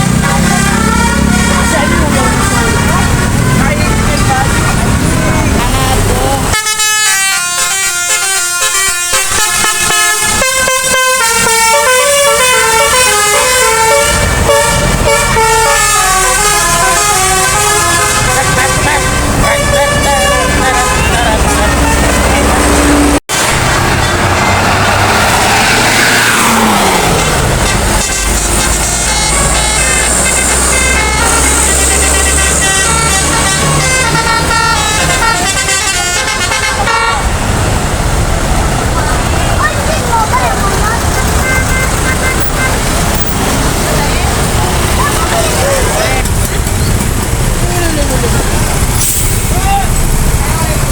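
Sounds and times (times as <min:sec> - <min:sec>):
bus engine rumbling: 0:00.0 - 0:50.9
musical air horn playing a tune: 0:00.1 - 0:04.7, 0:06.5 - 0:23.1, 0:27.6 - 0:37.3.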